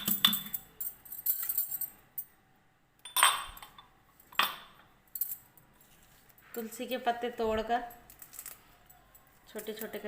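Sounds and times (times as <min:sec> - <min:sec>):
kitchen utensils clinking: 0:00.0 - 0:02.0.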